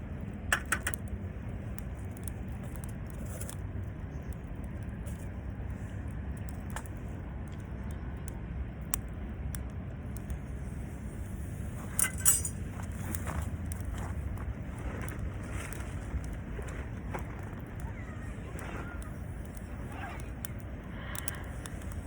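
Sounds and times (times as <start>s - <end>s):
campfire crackling and popping: 0.0s - 22.0s
low rumble: 1.1s - 22.0s.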